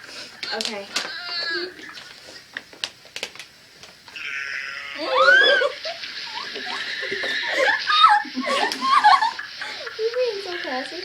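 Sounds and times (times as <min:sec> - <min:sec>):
animal wavering cry: 0:04.2 - 0:08.2.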